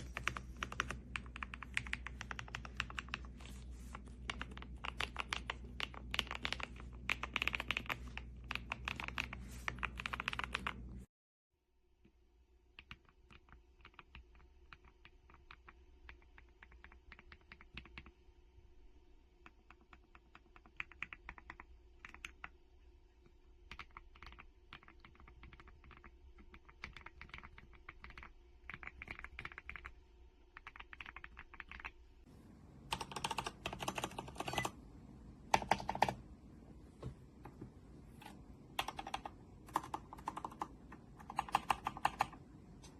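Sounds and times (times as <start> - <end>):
typing on mechanical keyboard: 0.0 - 10.9, 12.8 - 18.1, 19.5 - 22.5, 23.6 - 30.0, 30.6 - 32.0, 32.9 - 34.8, 35.5 - 36.2, 38.2 - 42.5.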